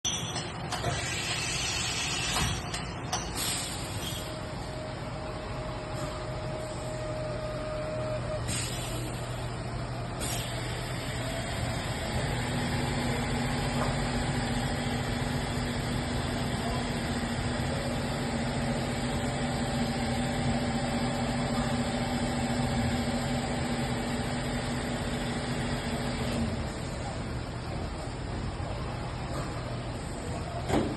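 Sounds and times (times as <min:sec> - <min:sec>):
machining center humming: 0:00.2 - 0:30.6.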